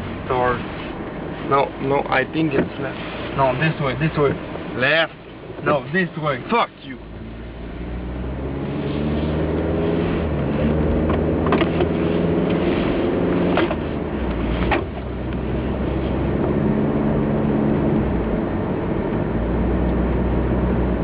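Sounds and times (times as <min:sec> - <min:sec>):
car engine and road noise: 0:00.0 - 0:21.0
sharp clicks or knocks: 0:11.0 - 0:11.9.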